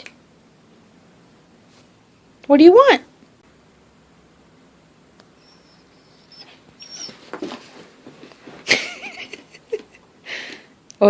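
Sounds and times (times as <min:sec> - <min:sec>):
dog yipping: 0:05.4 - 0:07.6
dog whining: 0:05.4 - 0:07.7.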